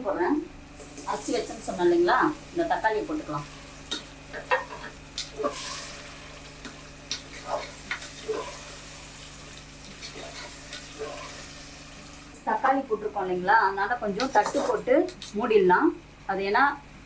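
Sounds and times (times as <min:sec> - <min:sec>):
food sizzling in a pan: 0:00.7 - 0:12.8.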